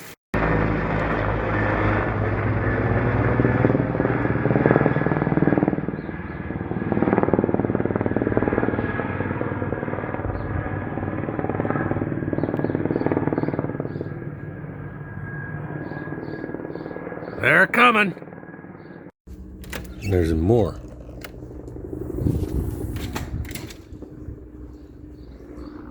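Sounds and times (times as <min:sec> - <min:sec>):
engine droning: 0:19.3 - 0:25.9.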